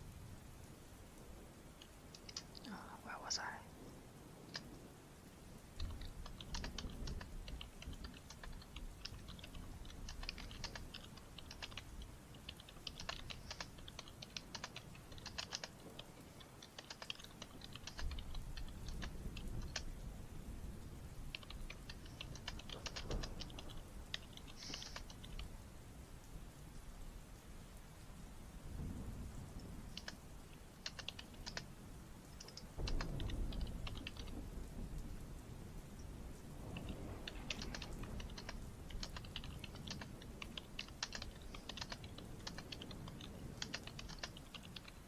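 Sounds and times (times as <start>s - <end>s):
keyboard typing: 2.2s - 2.7s, 5.8s - 20.0s, 21.3s - 25.5s, 29.9s - 30.2s, 30.8s - 31.7s, 32.4s - 34.4s, 36.7s - 45.0s.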